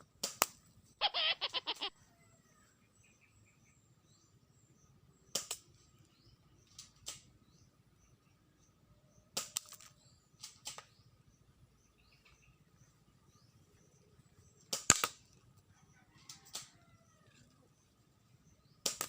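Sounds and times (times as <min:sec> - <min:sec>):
airsoft pistols firing: 0:14.7 - 0:15.2.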